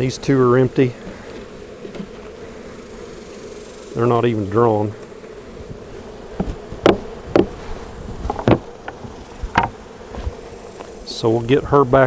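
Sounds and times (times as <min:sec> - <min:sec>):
bees buzzing: 0:00.0 - 0:12.0
wooden hive frames knocking: 0:00.0 - 0:12.0.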